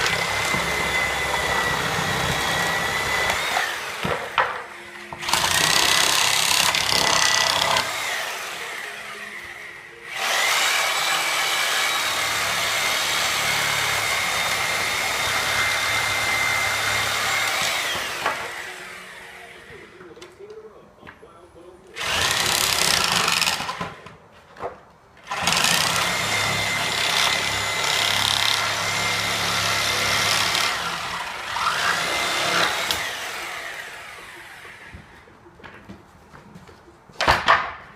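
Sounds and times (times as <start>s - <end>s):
reciprocating saw cutting nails: 5.0s - 18.8s, 22.0s - 24.0s, 25.2s - 35.0s.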